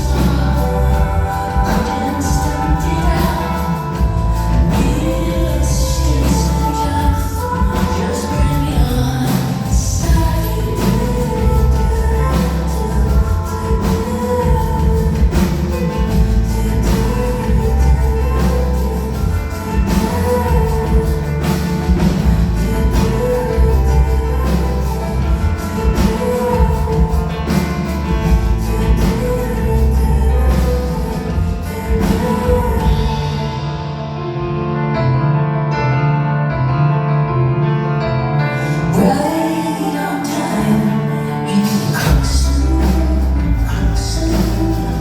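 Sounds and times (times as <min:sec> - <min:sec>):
drum beat: 0:00.0 - 0:33.4
person singing: 0:00.0 - 0:35.0, 0:38.4 - 0:45.0
heavy bass: 0:00.0 - 0:45.0
live band music: 0:00.0 - 0:45.0.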